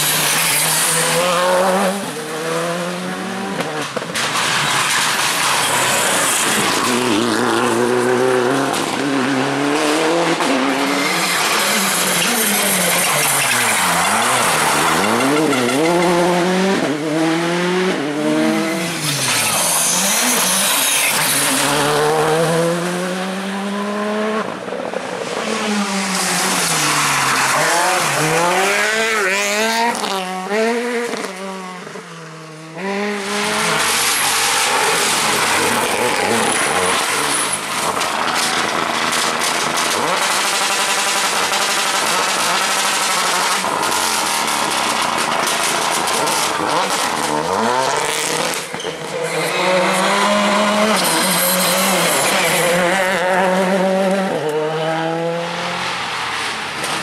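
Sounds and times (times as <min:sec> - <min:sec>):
rally car engines revving: 0:00.0 - 0:57.0.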